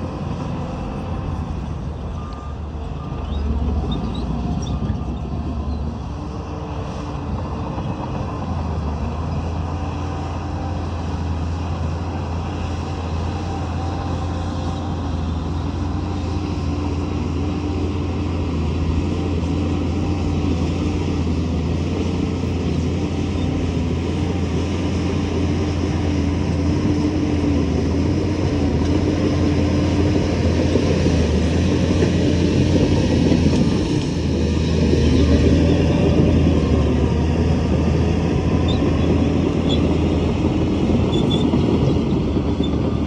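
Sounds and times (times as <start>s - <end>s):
heavy diesel engine running: 0.0s - 43.0s.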